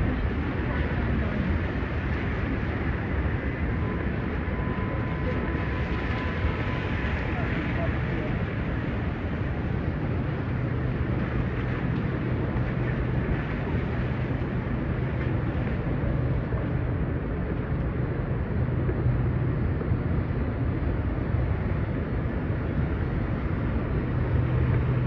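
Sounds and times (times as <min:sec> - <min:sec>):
low rumble of traffic: 0:00.0 - 0:25.0
street noise: 0:00.0 - 0:25.0.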